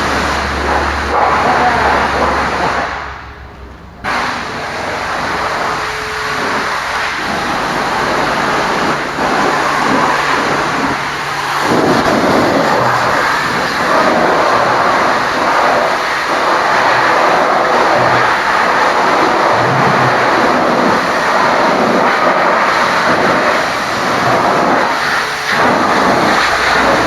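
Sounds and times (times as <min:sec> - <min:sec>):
high-pressure water spray hissing: 0:00.0 - 0:27.0.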